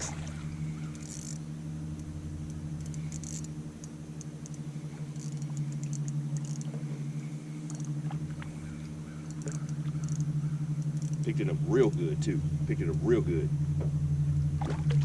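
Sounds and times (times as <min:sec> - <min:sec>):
low mechanical hum: 0:00.0 - 0:15.0
faint clicks and rattles: 0:00.8 - 0:12.2.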